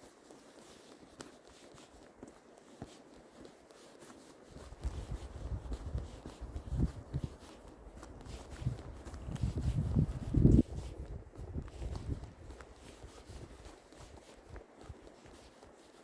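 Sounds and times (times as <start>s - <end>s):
footsteps on snow: 0.0s - 16.0s.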